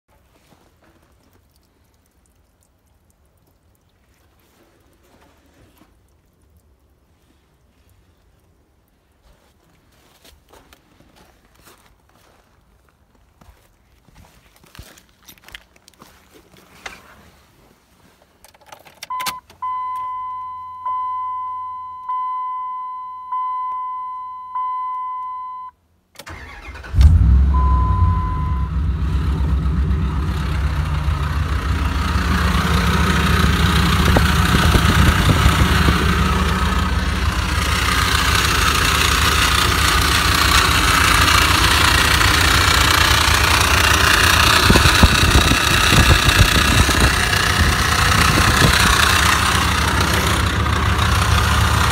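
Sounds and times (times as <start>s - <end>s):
short beep: 19.1s - 25.8s, 27.4s - 29.6s
engine cranking and idling: 26.2s - 51.9s.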